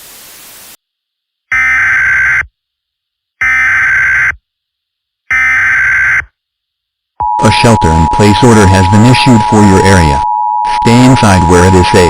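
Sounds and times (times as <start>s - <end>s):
faint static hiss: 0.0s - 5.3s
loud data tone bursts: 7.2s - 12.0s.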